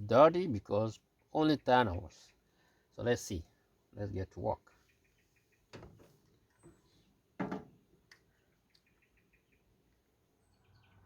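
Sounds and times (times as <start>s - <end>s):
faint bird chirps: 4.5s - 7.3s, 8.2s - 11.0s.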